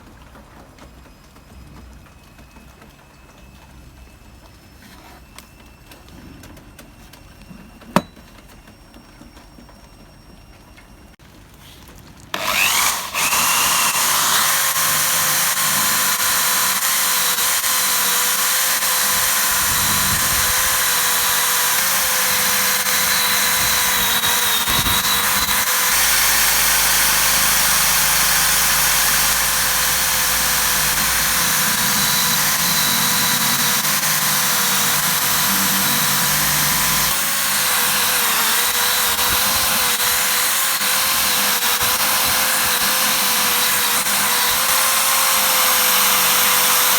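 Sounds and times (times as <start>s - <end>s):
power tool motor whine: 12.3s - 46.9s.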